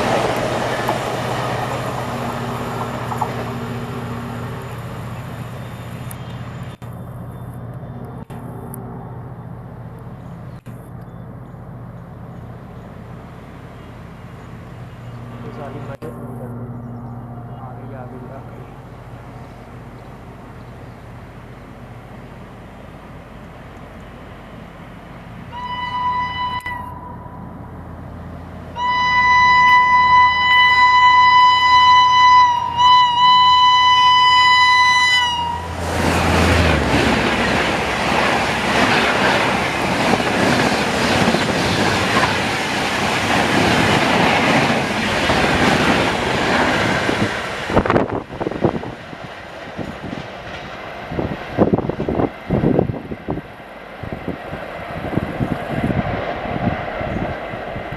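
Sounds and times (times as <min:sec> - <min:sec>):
train rushing past: 0:00.0 - 0:06.8, 0:12.1 - 0:57.9
wheel and rail rattle: 0:00.0 - 0:08.7, 0:35.7 - 0:52.8
train horn blasts: 0:25.5 - 0:27.6, 0:28.7 - 0:36.6
wind noise: 0:35.2 - 0:57.9.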